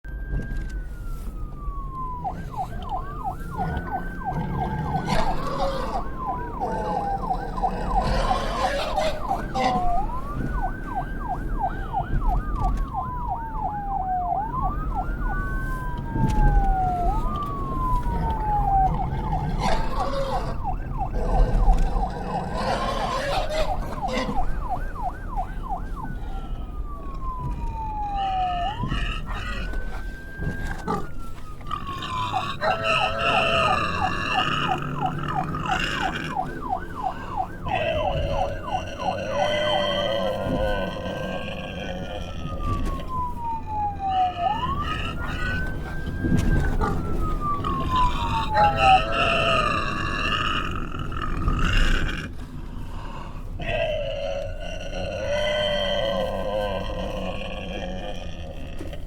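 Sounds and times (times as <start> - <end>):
police siren wail and yelp: 0.0 - 59.0
squealing sounds: 27.8 - 43.1, 43.8 - 52.4.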